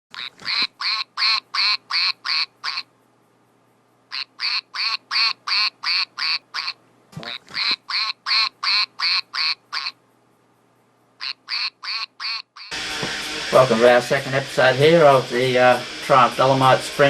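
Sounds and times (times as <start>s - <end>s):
duck quacking: 0.1s - 2.9s, 4.1s - 10.0s, 11.2s - 12.8s.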